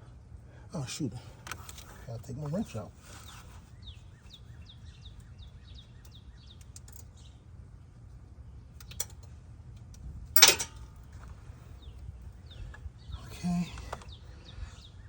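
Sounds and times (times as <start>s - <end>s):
bird chirping: 2.5s - 7.5s, 11.0s - 15.0s
wrench striking metal: 10.4s - 10.8s.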